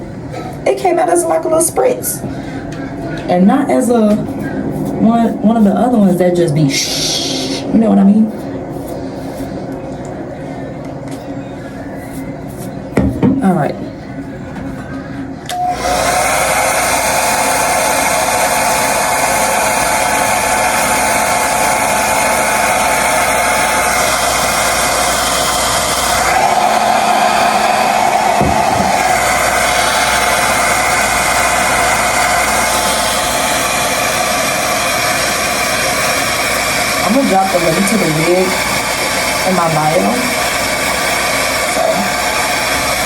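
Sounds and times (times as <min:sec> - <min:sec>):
hair dryer blowing: 0:03.7 - 0:08.0, 0:15.5 - 0:43.0.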